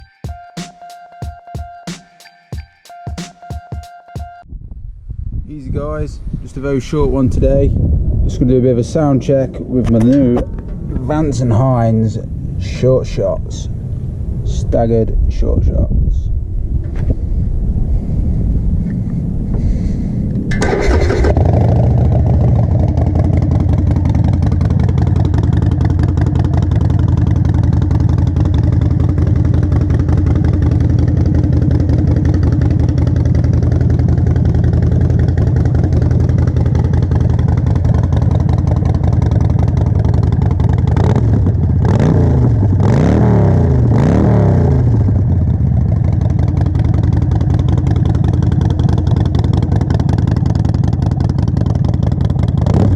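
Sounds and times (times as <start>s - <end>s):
motorcycle engine idling: 20.4s - 42.8s, 44.9s - 52.9s
motorcycle engine revving: 20.4s - 52.9s.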